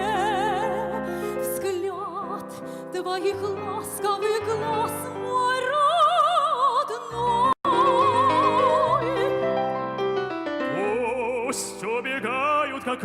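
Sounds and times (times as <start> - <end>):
woman singing with vibrato: 0.0 - 9.6
instrumental accompaniment: 7.7 - 12.7.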